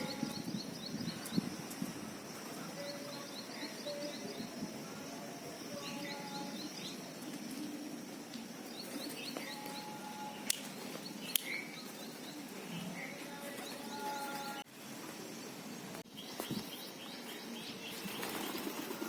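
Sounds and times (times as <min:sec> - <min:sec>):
birds chirping: 0:00.0 - 0:19.0
sharp clicks: 0:10.4 - 0:10.7, 0:11.3 - 0:11.6.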